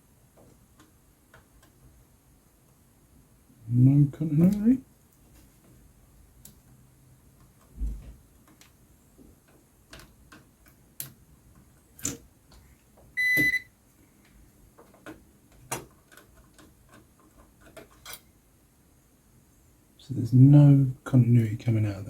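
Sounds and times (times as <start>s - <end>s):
short high beep: 13.2s - 13.7s.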